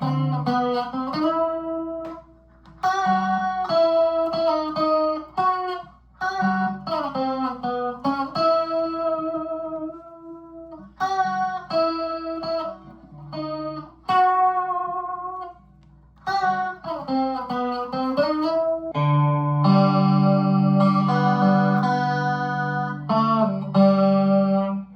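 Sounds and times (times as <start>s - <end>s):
electric guitar chord ringing: 0.0s - 2.2s, 16.2s - 24.9s
clean electric guitar lead notes: 0.0s - 24.9s.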